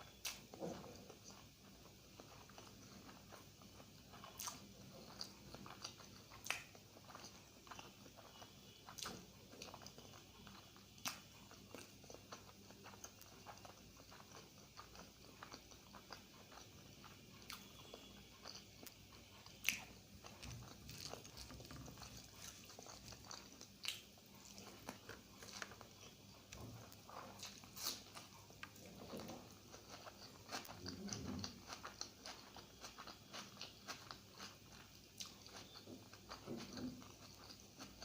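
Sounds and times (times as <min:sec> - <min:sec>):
person chewing: 0:00.0 - 0:38.0.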